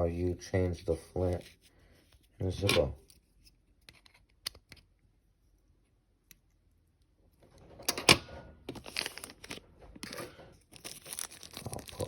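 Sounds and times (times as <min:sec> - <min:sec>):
rustling handling noise: 0:08.6 - 0:12.0.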